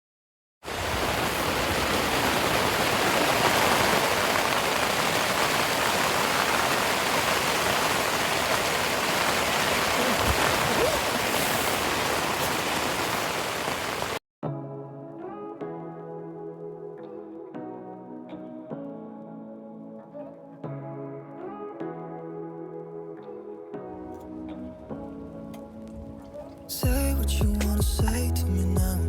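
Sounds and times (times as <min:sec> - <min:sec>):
rushing water: 0:00.7 - 0:14.2.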